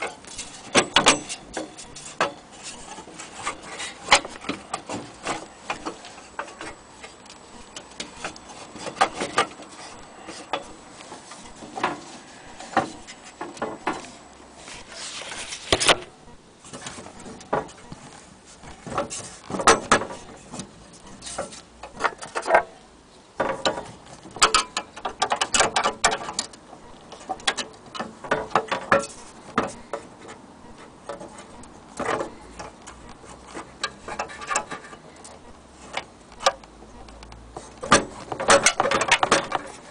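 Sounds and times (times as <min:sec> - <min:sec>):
object being handled: 0:00.0 - 0:22.7.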